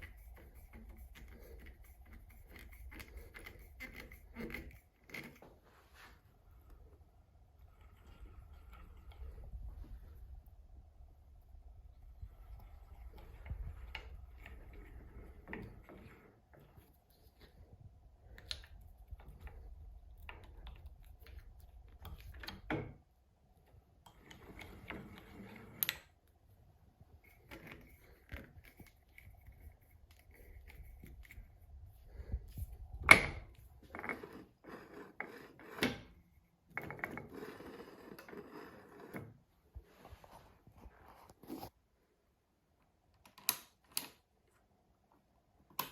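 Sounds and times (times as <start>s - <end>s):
faint low hum: 0.0s - 33.9s.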